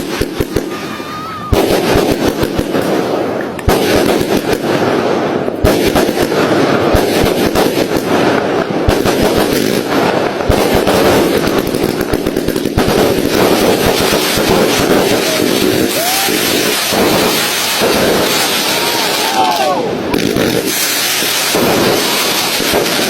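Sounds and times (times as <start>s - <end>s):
firework booms: 0.0s - 23.0s
fireworks crackling and popping: 0.0s - 23.0s.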